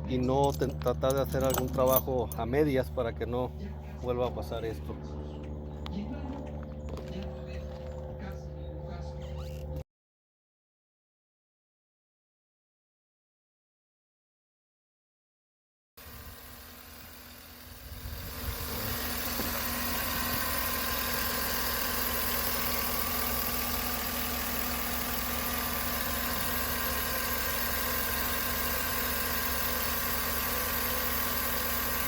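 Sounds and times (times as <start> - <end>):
car engine idling: 16.0 - 32.0.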